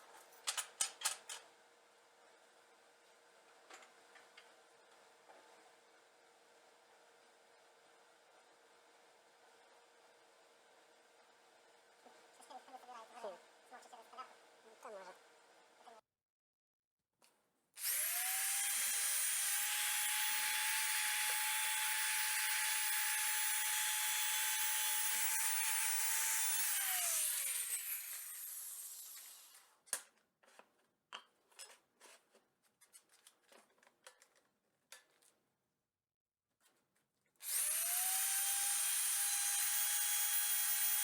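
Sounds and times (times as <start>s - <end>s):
power tool whining: 17.8s - 29.5s, 37.4s - 41.0s.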